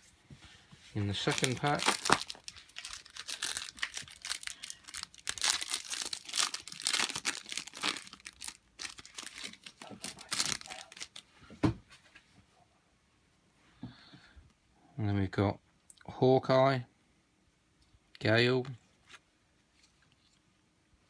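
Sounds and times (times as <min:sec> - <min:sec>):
wrapper tearing and crinkling: 0:01.0 - 0:11.2.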